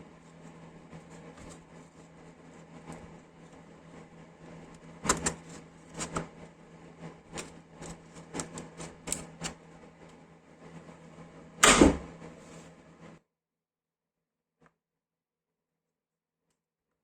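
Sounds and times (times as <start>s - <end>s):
faint steady hum: 0.0s - 13.2s
loud thump: 11.6s - 12.1s.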